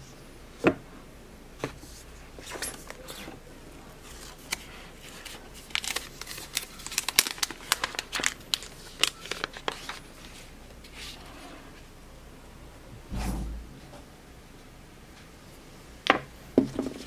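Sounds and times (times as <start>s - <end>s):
packaging crinkling and crackling: 4.0s - 10.5s.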